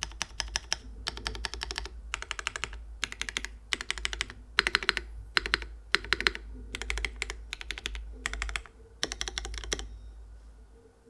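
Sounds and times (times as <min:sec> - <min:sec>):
mechanical keyboard typing: 0:00.0 - 0:09.9.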